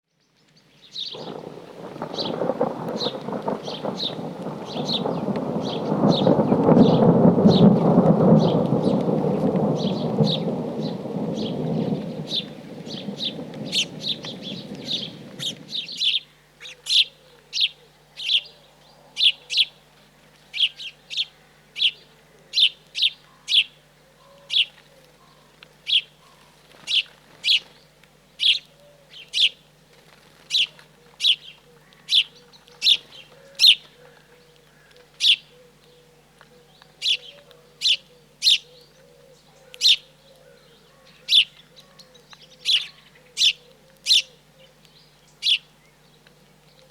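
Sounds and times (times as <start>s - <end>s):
rain: 0.4s - 38.9s, 39.8s - 46.9s
thunder rumbling: 1.1s - 16.2s
bird chirping: 2.0s - 18.6s.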